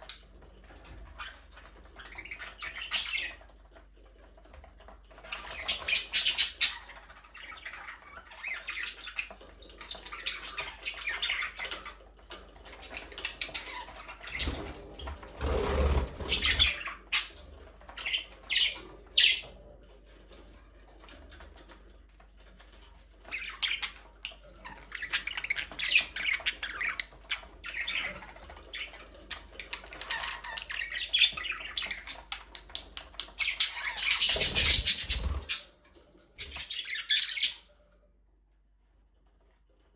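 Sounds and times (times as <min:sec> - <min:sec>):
budgerigars chirping: 0:02.0 - 0:03.4, 0:05.2 - 0:11.9, 0:12.7 - 0:17.4, 0:18.0 - 0:19.5, 0:23.3 - 0:35.7, 0:36.4 - 0:37.7.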